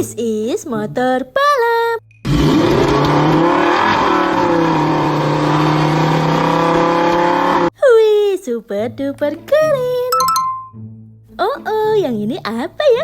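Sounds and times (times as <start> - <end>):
racing motorcycle engine revving: 2.3 - 7.7.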